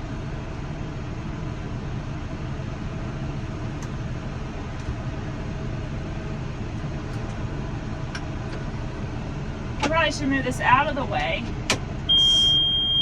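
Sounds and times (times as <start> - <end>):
tractor engine running: 0.0 - 13.0.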